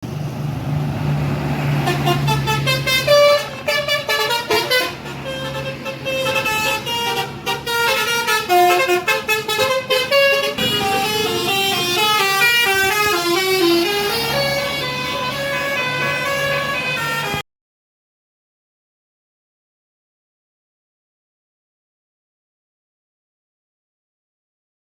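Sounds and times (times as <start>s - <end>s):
bus engine hum: 0.0s - 17.4s
musical bus horns: 1.1s - 17.4s.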